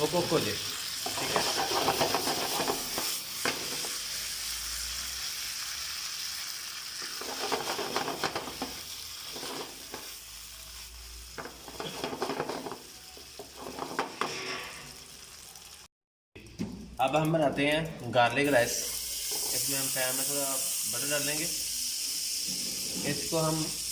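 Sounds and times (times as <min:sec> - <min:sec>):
chicken sizzling in a pan: 0:00.0 - 0:15.9, 0:18.4 - 0:23.9
spatula scraping a pan: 0:01.0 - 0:03.9, 0:11.4 - 0:12.8, 0:13.5 - 0:15.0.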